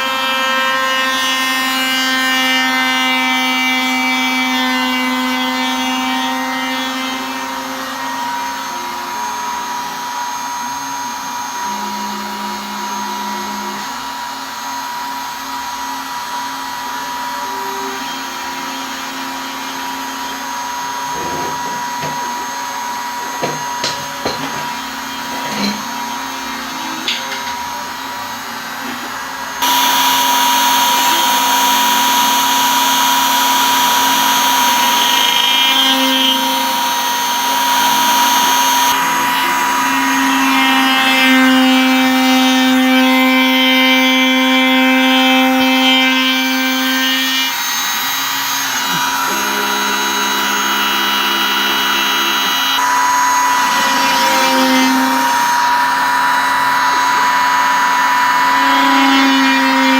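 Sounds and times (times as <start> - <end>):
spindle motor running: 7.4 - 59.9
stepper motors whining: 46.4 - 59.7.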